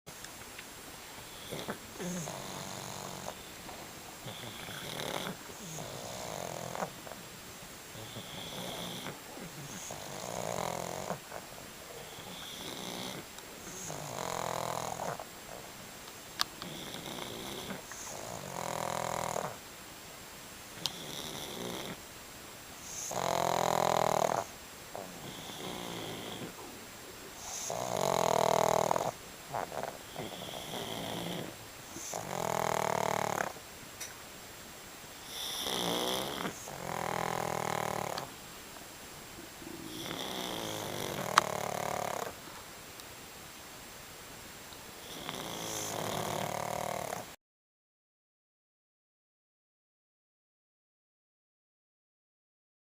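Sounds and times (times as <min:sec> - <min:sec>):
dog snoring: 0:01.2 - 0:07.2, 0:07.9 - 0:15.7, 0:16.6 - 0:19.6, 0:20.8 - 0:22.0, 0:22.8 - 0:26.7, 0:27.4 - 0:33.6, 0:35.2 - 0:38.3, 0:39.6 - 0:42.4, 0:45.0 - 0:47.4.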